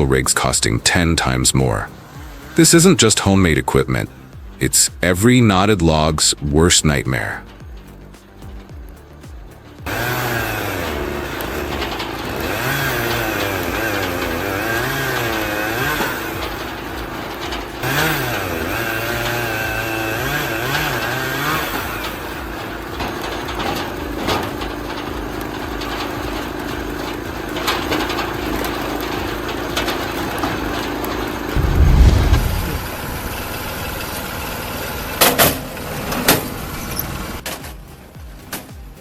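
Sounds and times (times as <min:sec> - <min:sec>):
log splitter engine running: 0:00.0 - 0:39.0
heavy low thump: 0:31.6 - 0:35.2.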